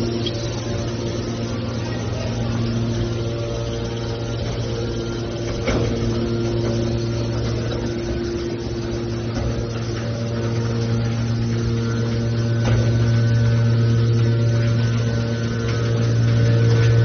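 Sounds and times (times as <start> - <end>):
scrap metal baler humming: 0.0 - 17.0.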